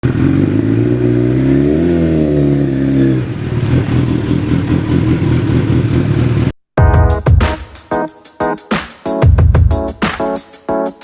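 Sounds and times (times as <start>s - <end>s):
motorcycle engine revving and idling: 0.0s - 6.6s.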